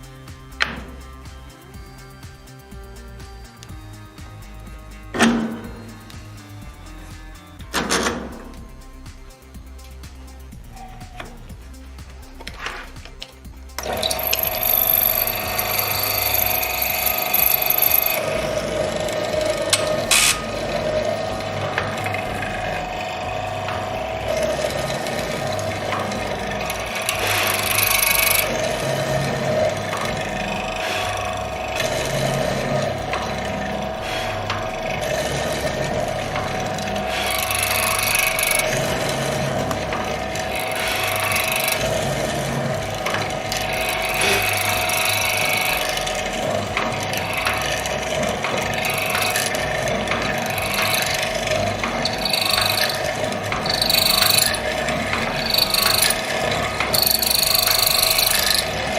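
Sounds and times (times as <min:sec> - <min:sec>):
motor humming: 0:00.0 - 0:58.9
chisel grinding into wood: 0:51.9 - 0:56.3, 0:57.0 - 0:58.7.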